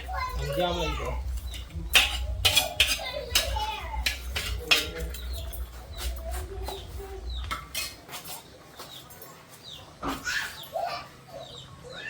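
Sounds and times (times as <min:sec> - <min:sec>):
pot and spoon clinking: 0:00.0 - 0:06.2, 0:07.4 - 0:08.1
birds chirping: 0:00.0 - 0:12.0.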